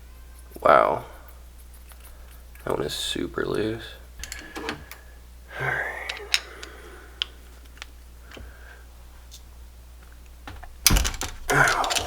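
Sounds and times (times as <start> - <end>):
hand tools clicking on metal: 6.0 - 8.0, 10.8 - 12.0
rattling metal clatter: 10.8 - 12.0.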